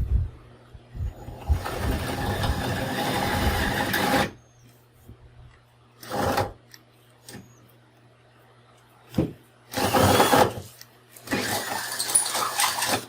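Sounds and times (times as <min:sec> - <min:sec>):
power drill drilling: 0:09.7 - 0:10.6.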